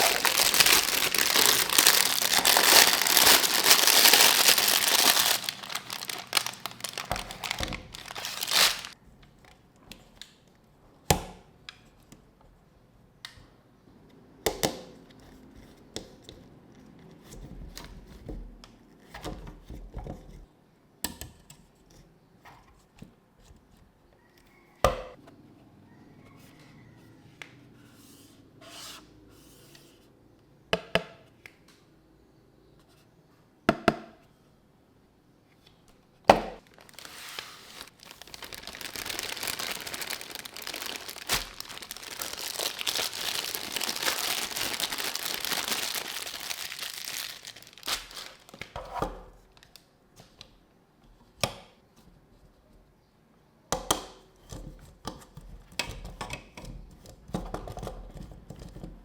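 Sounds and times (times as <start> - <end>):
plastic packaging crinkling: 0.0 - 9.0, 36.6 - 48.8.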